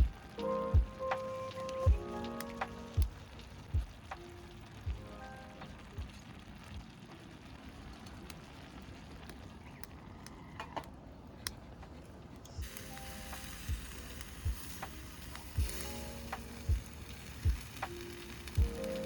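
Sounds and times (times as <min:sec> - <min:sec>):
soft background music: 0:00.0 - 0:06.8, 0:12.5 - 0:19.0
food sizzling in a pan: 0:12.6 - 0:19.0.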